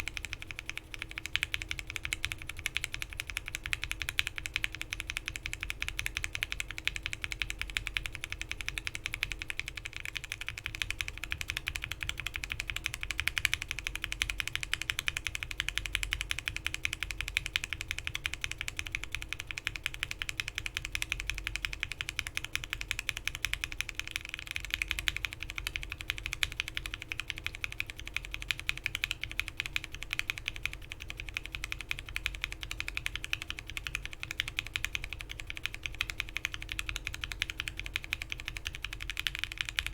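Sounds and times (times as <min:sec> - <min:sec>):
typing on mechanical keyboard: 0:00.0 - 0:39.9.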